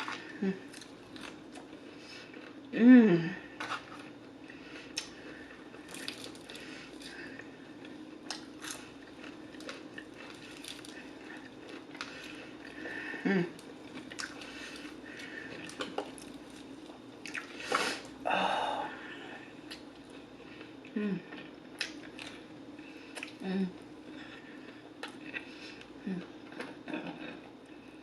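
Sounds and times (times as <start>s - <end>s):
person humming mmm: 0.1s - 0.8s, 2.7s - 3.5s, 13.2s - 13.6s, 18.2s - 19.4s, 20.9s - 21.5s, 23.3s - 23.8s, 26.0s - 26.3s
crunchy chewing and biting: 4.8s - 13.0s.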